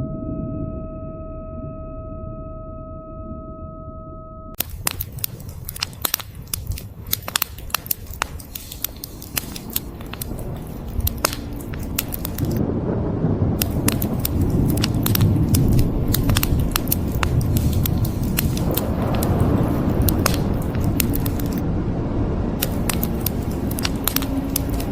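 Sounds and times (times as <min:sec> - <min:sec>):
wood fire crackling and popping: 0:04.6 - 0:12.6, 0:13.6 - 0:21.6, 0:22.6 - 0:24.9
rolling thunder rumble: 0:12.3 - 0:20.6, 0:21.2 - 0:23.2.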